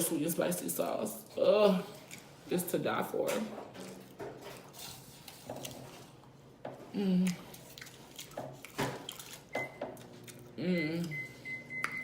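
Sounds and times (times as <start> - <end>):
person humming: 6.9 - 7.5, 10.6 - 11.2
person chewing and lip smacking: 7.0 - 12.0.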